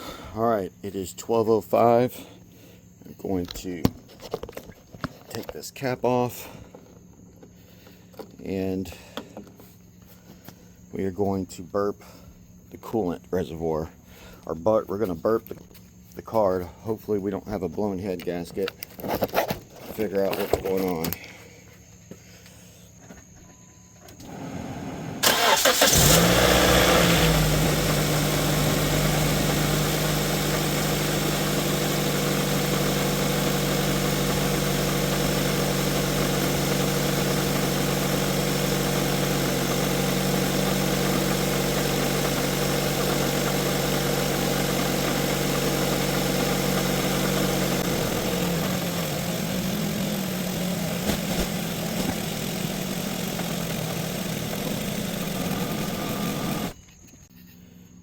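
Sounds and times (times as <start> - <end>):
car engine idling: 24.2 - 56.8
car engine cranking: 24.2 - 56.9.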